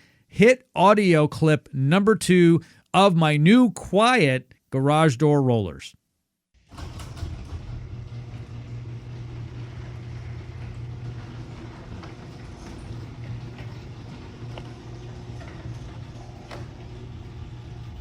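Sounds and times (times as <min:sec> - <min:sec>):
garage door opener buzzing: 0:06.6 - 0:18.0.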